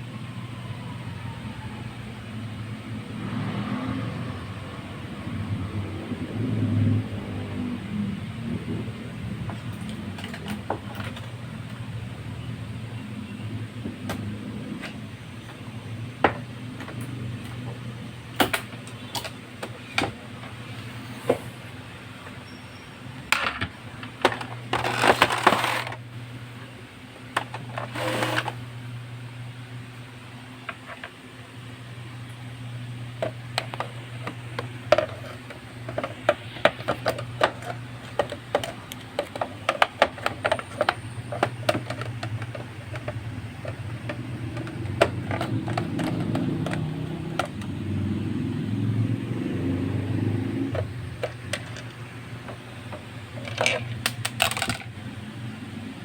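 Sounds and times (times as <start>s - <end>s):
steady low hum: 23.1s - 56.0s
clicks and taps: 33.2s - 47.8s.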